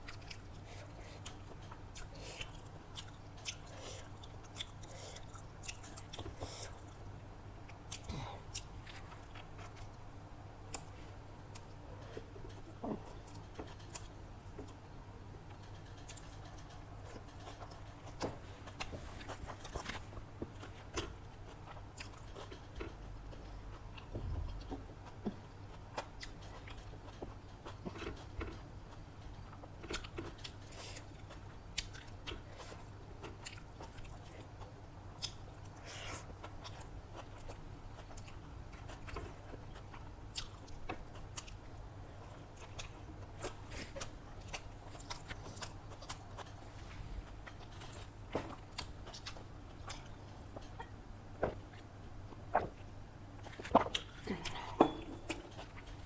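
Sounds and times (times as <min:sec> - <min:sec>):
person chewing food: 0:00.0 - 0:14.9, 0:15.5 - 0:56.0
steady low hum: 0:00.0 - 0:56.0
food crunching: 0:42.2 - 0:56.0.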